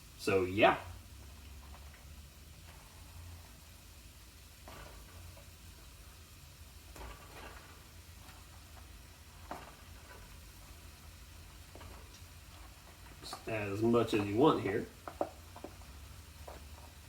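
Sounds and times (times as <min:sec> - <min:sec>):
food sizzling in a pan: 0:00.0 - 0:17.0
utensil scraping and knocking: 0:15.0 - 0:17.0.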